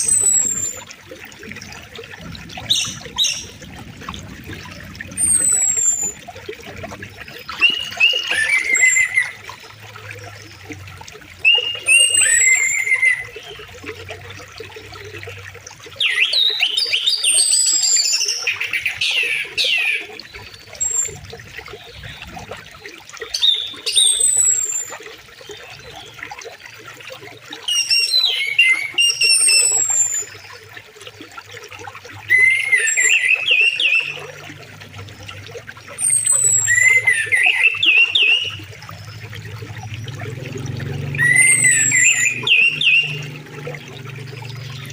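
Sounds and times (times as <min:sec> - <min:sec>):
river water running: 0:00.0 - 0:44.9
songbird whistling: 0:11.4 - 0:13.4, 0:36.0 - 0:38.6, 0:41.2 - 0:43.2.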